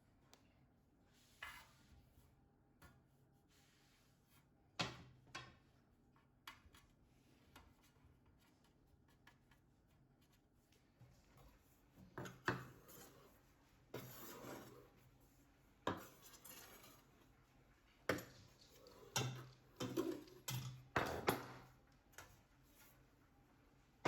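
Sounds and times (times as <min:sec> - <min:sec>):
utensils and dishes clinking: 0:18.1 - 0:21.7.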